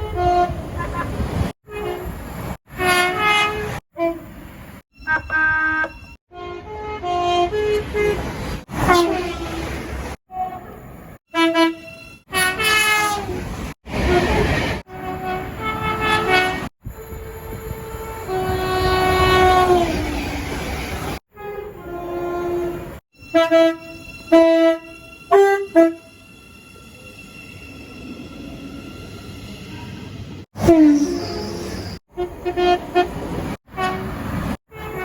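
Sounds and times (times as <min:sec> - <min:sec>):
locomotive air horn blasts: 0:00.0 - 0:00.6, 0:01.6 - 0:02.1, 0:02.7 - 0:04.3, 0:05.0 - 0:13.4, 0:14.0 - 0:20.0, 0:21.3 - 0:26.2, 0:30.6 - 0:35.0
rumble of moving trains: 0:00.0 - 0:35.0.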